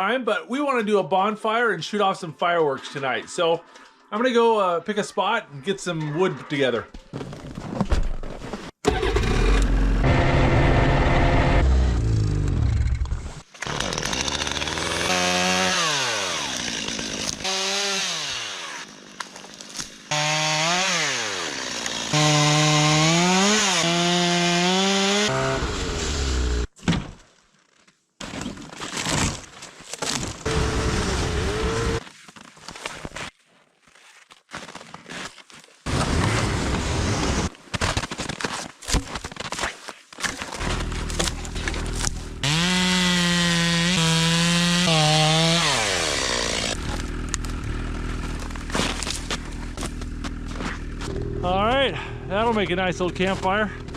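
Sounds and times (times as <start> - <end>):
chainsaw cutting wood: 8.9 - 26.7, 30.1 - 32.0, 40.6 - 51.2.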